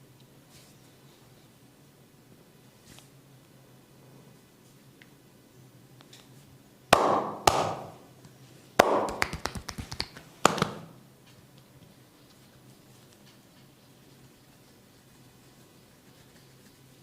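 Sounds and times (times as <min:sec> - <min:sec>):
hands slapping bare back: 0:07.0 - 0:08.0, 0:08.8 - 0:10.9.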